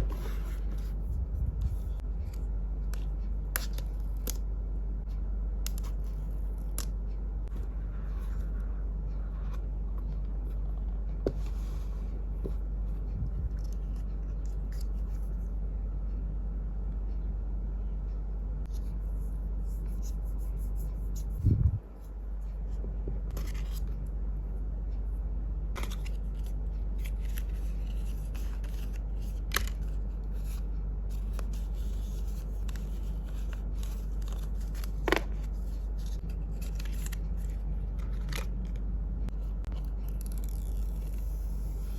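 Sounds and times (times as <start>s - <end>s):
steady low hum: 0.0s - 41.9s
hands handling phone packaging: 25.8s - 38.7s.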